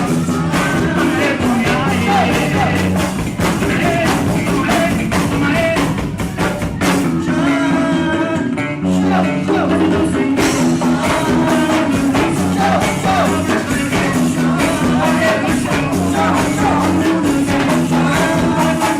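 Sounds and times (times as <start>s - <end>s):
person singing over a beat: 0.0s - 18.9s.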